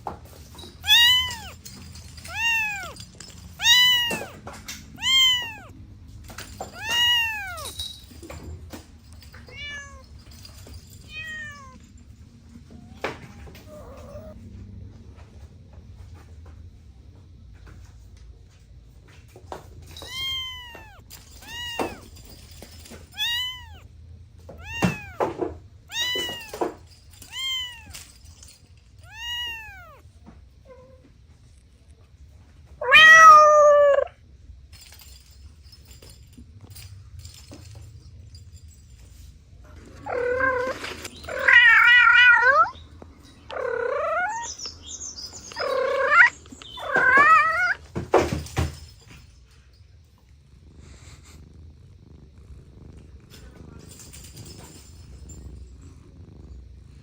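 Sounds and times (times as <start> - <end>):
cats meowing: 0.0 - 14.5, 19.9 - 31.1, 32.8 - 34.2, 39.7 - 48.7.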